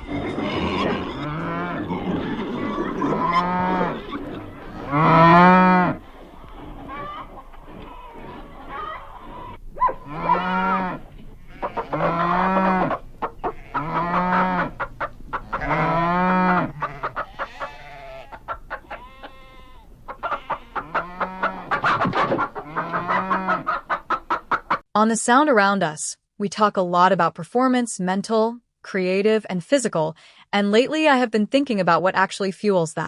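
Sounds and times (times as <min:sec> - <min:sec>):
chicken drawn-out calls: 0:00.0 - 0:24.8
chickens clucking: 0:00.0 - 0:24.8.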